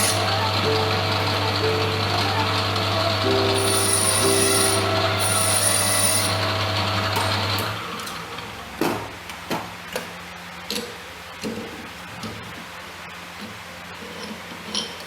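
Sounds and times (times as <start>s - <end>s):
small power tool whining: 0.0s - 0.4s, 3.5s - 8.0s.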